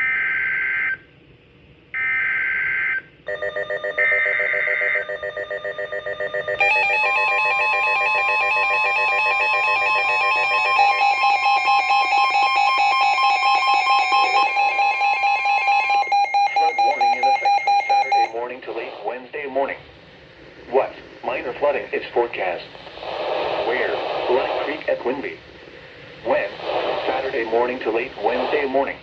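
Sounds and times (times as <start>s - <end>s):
rapidly pulsing electronic alarm: 2.0s - 18.9s
screeching data bursts: 3.3s - 18.4s
steady attention tone: 3.3s - 29.0s.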